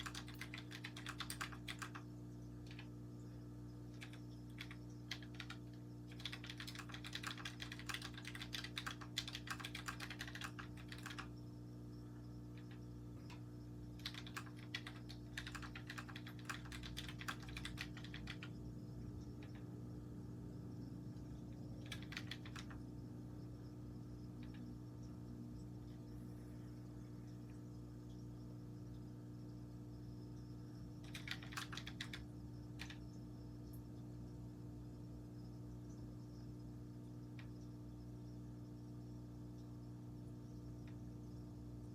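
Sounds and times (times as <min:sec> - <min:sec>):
mechanical keyboard typing: 0:00.0 - 0:02.9, 0:03.9 - 0:11.3, 0:14.0 - 0:18.6, 0:21.7 - 0:22.8, 0:31.0 - 0:33.0.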